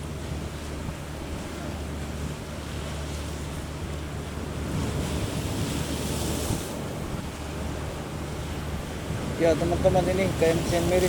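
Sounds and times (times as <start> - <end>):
sea waves washing: 2.5 - 11.0.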